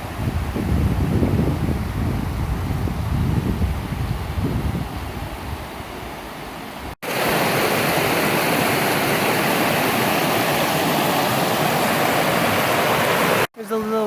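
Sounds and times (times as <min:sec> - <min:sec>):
wind buffeting microphone: 0:00.0 - 0:06.2
waterfall rushing: 0:07.0 - 0:13.5.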